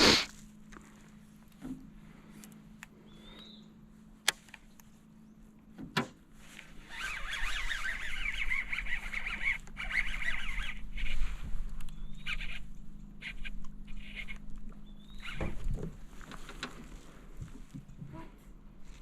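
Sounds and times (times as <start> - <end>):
steady low hum: 0.0 - 19.0
birds chirping: 3.0 - 3.9, 11.8 - 15.7.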